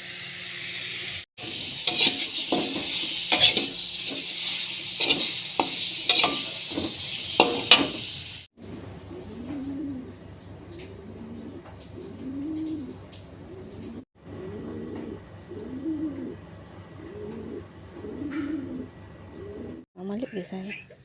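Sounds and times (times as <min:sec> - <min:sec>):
chicken sizzling in a pan: 0:00.0 - 0:08.6
spatula scraping a pan: 0:01.4 - 0:08.4
bird cooing: 0:09.0 - 0:19.8.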